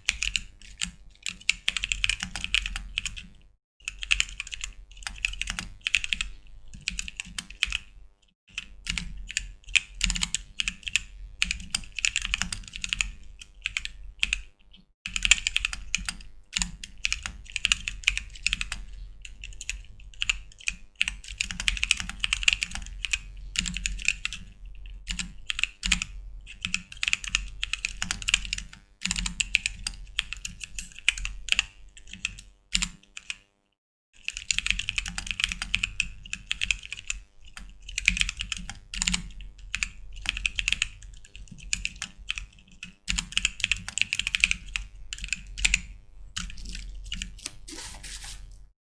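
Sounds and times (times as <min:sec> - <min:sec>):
mechanical keyboard typing: 0:00.0 - 0:03.3, 0:03.9 - 0:07.8, 0:08.5 - 0:14.5, 0:15.1 - 0:18.8, 0:19.4 - 0:24.4, 0:25.1 - 0:33.4, 0:34.3 - 0:47.6.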